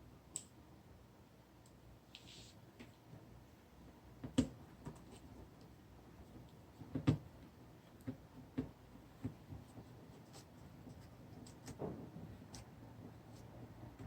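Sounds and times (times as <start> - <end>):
light clicks and taps of small parts: 0.3 - 0.6.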